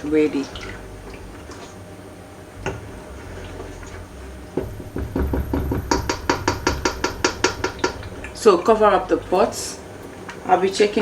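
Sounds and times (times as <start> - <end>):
spoon knocking against cooking pot: 4.6 - 8.4.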